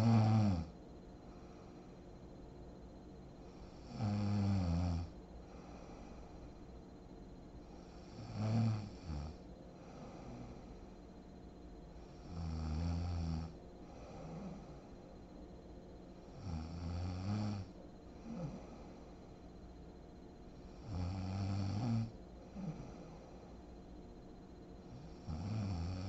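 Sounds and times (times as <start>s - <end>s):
woman snoring: 0.0s - 0.8s, 3.5s - 6.3s, 7.7s - 10.8s, 12.0s - 14.9s, 16.2s - 19.1s, 20.6s - 23.4s, 24.8s - 26.0s
faint breathing: 1.1s - 2.4s, 3.3s - 4.1s, 5.0s - 6.9s, 7.5s - 11.2s, 13.5s - 15.5s, 17.6s - 21.0s, 22.0s - 25.5s.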